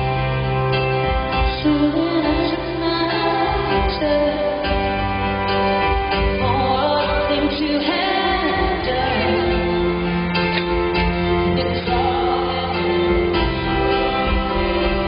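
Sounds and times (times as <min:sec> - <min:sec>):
instrumental accompaniment: 0:00.0 - 0:15.0
woman singing a slow pop song: 0:01.3 - 0:05.3, 0:06.2 - 0:10.5, 0:11.3 - 0:13.8.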